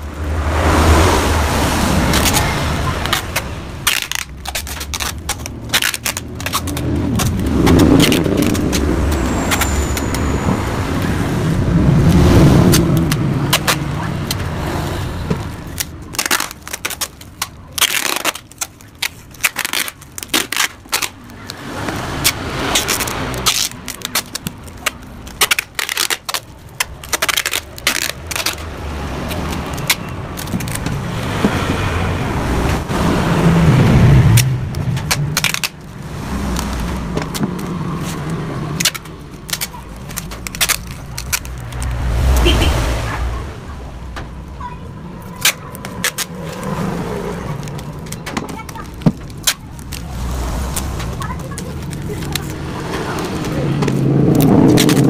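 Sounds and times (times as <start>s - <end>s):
engine revving: 0.0s - 3.9s, 5.5s - 15.6s, 28.2s - 44.5s, 49.8s - 55.0s
sharp clicks and knocks: 47.6s - 55.0s.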